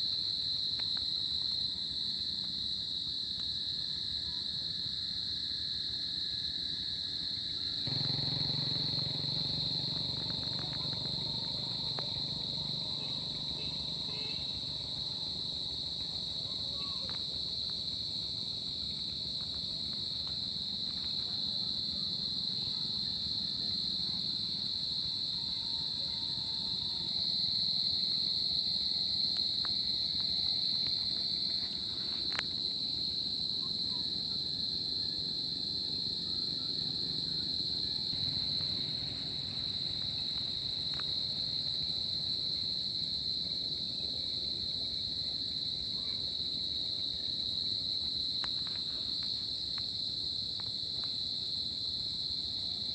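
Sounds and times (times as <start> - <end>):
crickets chirping: 0.0 - 52.9
faint ticks: 7.9 - 13.9.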